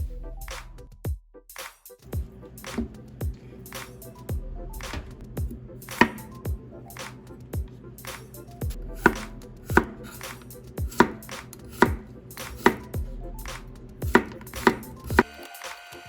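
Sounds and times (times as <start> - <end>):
knife chopping on cutting board: 2.7 - 3.0, 4.9 - 6.3, 9.0 - 13.0, 13.6 - 15.3.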